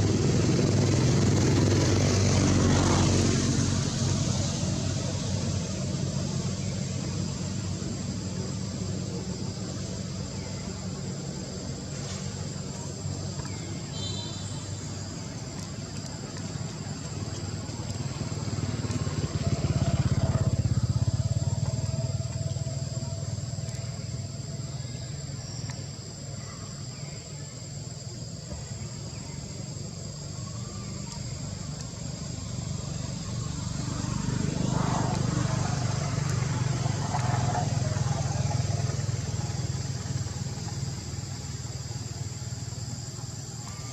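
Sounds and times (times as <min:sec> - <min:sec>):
vehicle engine hum: 0:00.0 - 0:27.0, 0:27.6 - 0:43.9.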